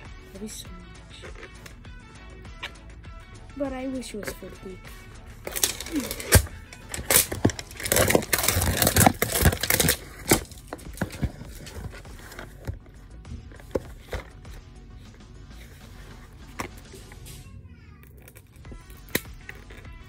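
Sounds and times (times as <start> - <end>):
background music: 0.0 - 20.0
toy packaging crackling: 5.4 - 12.9, 18.0 - 20.0.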